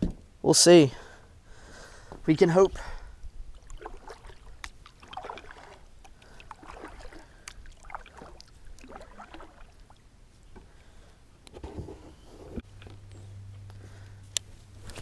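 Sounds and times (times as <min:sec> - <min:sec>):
paddle splashing in water: 0:03.5 - 0:10.1.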